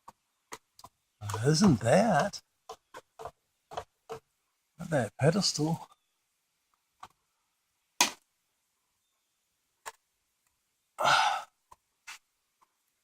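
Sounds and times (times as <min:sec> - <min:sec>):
man exhaling loudly: 0:11.0 - 0:11.5.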